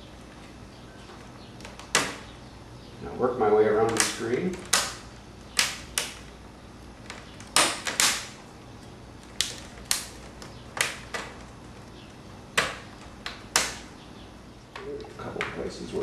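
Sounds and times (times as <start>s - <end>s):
plastic clips snapping into place: 3.9s - 6.3s, 12.6s - 13.9s.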